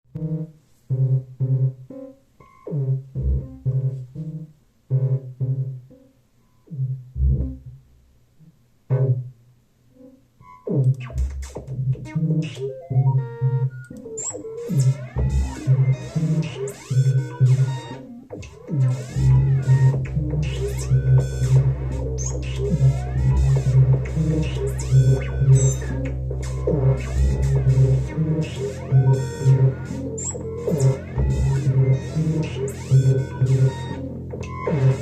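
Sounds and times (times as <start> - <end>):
synth bass and chords: 0.1 - 6.1, 6.7 - 8.0, 10.0 - 35.0
pitch-gliding synth lines: 11.0 - 35.0.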